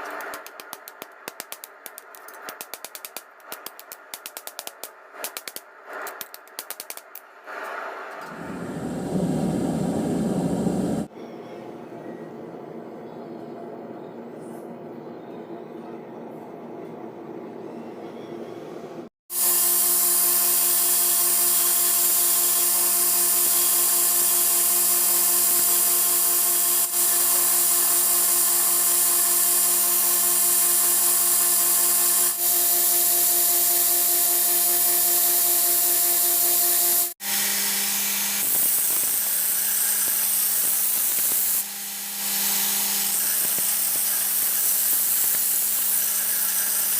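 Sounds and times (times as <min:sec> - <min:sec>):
low rumble: 0:08.3 - 0:11.1
grinder on steel: 0:25.5 - 0:46.9.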